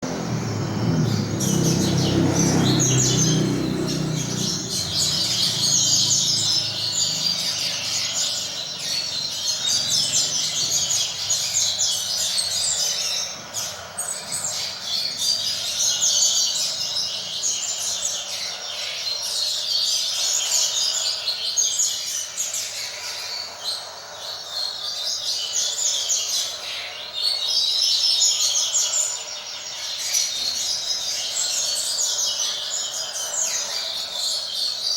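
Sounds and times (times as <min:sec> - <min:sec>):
low rumble: 0:00.0 - 0:05.5
birds singing fast high chirps: 0:00.0 - 0:34.9.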